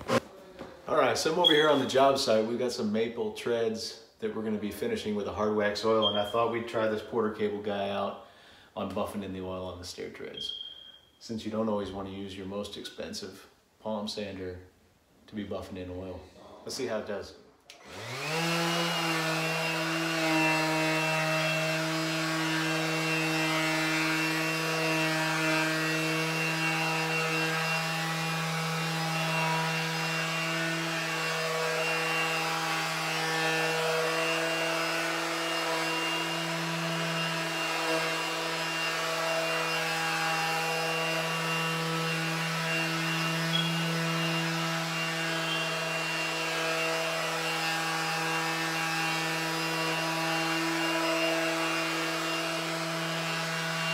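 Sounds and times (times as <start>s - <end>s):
sander pad rubbing on wood: 0.0s - 0.4s, 18.1s - 53.9s
orbital sander motor hum: 17.8s - 53.9s.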